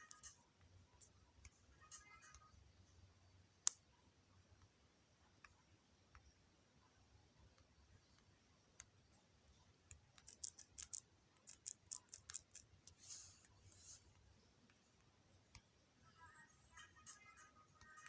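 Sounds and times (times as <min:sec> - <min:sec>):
scratchy rub: 0:11.6 - 0:14.2.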